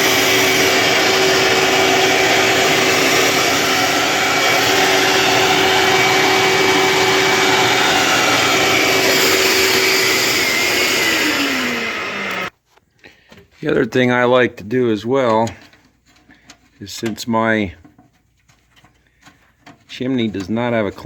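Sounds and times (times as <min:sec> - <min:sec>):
shop vac whining: 0:00.0 - 0:12.6.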